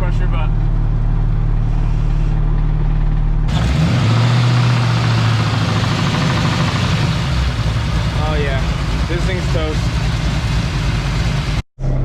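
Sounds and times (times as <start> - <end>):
car engine revving: 2.7 - 12.0
engine knocking: 5.0 - 11.6.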